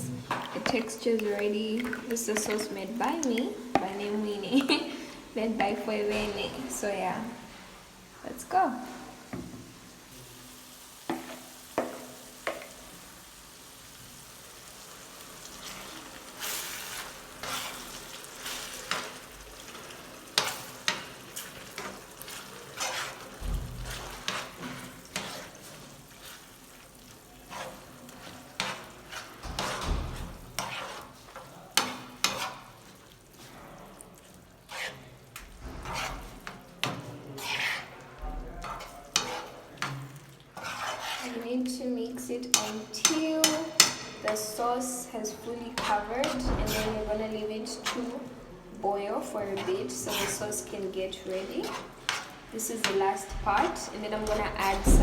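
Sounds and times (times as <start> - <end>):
meat sizzling in a pan: 6.8 - 41.2
utensil scraping a pan: 15.6 - 34.0, 34.6 - 41.6, 42.4 - 48.3, 48.9 - 55.0.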